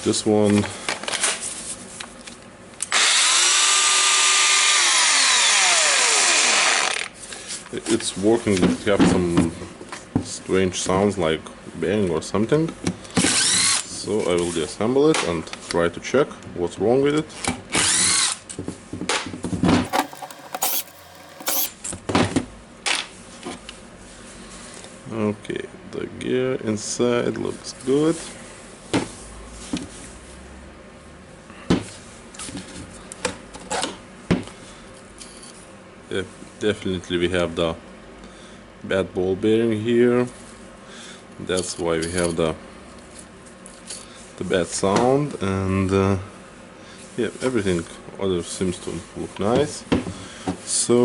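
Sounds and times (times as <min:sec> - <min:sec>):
angle grinder whining: 0:19.9 - 0:21.7
tools and parts clicking: 0:19.9 - 0:21.7.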